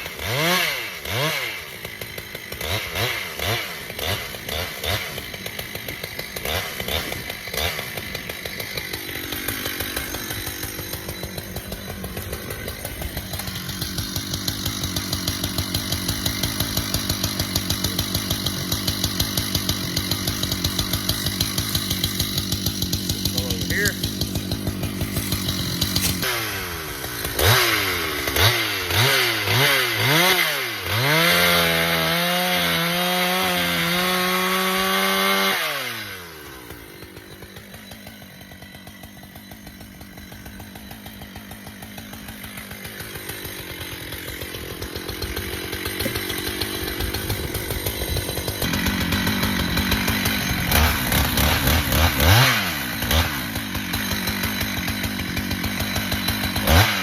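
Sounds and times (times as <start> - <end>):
chainsaw revving and cutting: 0.0 - 57.0.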